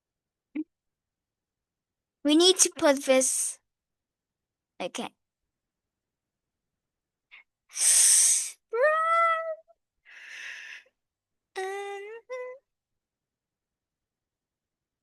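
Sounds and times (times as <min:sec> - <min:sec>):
person humming: 0:11.6 - 0:12.6.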